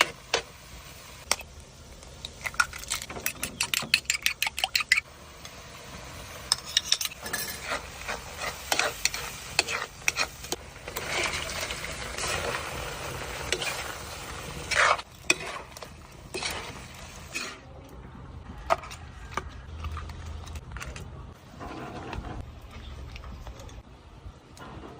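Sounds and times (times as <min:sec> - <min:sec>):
food sizzling in a frying pan: 0:05.0 - 0:17.6
utensil stirring and scraping: 0:06.5 - 0:17.6.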